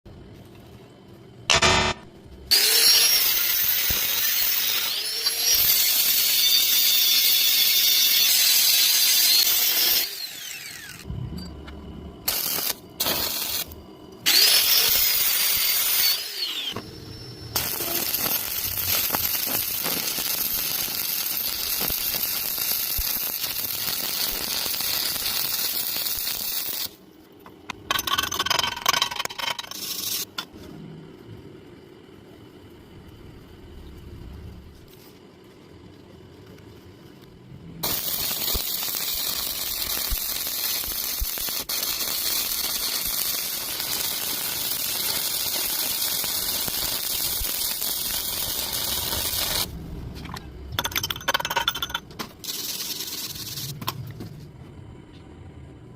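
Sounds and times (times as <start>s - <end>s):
power tool squealing: 14.3s - 20.0s.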